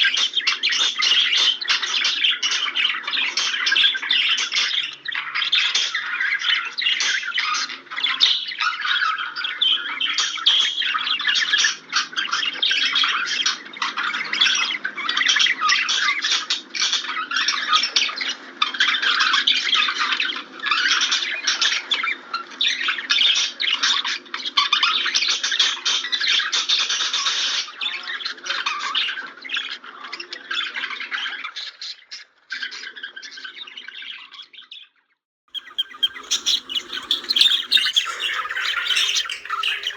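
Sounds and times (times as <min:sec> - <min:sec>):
budgerigars warbling and chirping: 0:35.6 - 0:39.9.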